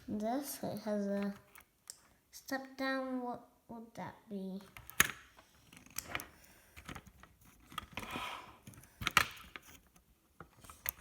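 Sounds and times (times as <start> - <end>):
plastic parts clicking and rattling: 4.7 - 11.0.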